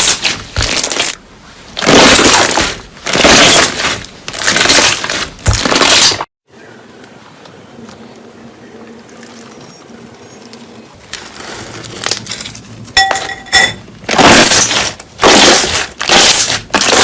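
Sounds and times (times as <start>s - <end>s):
crunchy slime crackling and popping: 0.0s - 1.2s, 14.0s - 17.0s
quiet hum: 6.5s - 14.1s.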